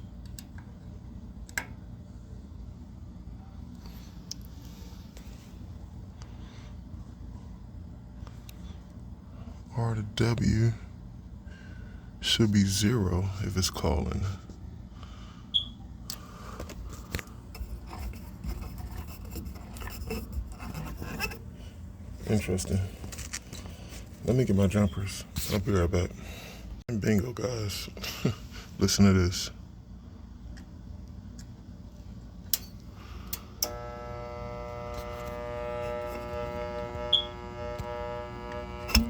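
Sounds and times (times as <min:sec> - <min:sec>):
steady low hum: 0:00.0 - 0:39.0
handling scrapes and clicks: 0:16.6 - 0:21.5
meter probes rubbing on terminals: 0:16.9 - 0:21.5, 0:33.6 - 0:39.0
electric motor humming: 0:33.4 - 0:39.0.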